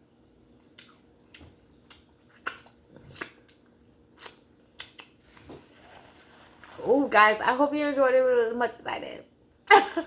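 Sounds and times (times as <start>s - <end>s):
wet chewing clicks and smacks: 0.5s - 5.2s.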